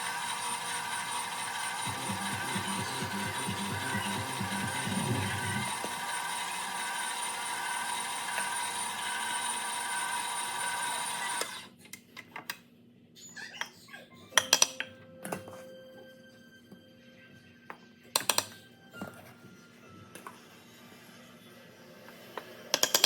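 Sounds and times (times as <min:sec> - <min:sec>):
appliance motor running with whine: 0:00.0 - 0:11.7.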